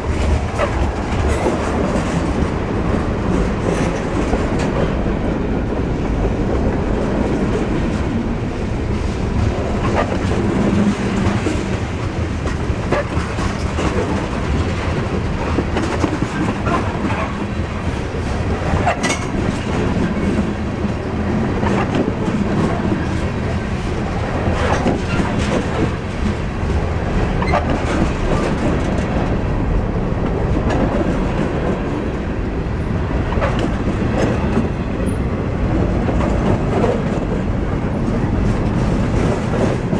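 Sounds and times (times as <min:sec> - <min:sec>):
freight train rumbling past: 0:00.0 - 0:39.9
wheels clicking over rail joints: 0:09.3 - 0:29.4.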